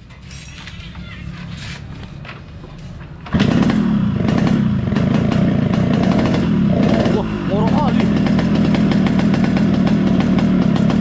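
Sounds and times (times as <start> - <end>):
two-stroke motorcycle engine revving: 3.3 - 11.0.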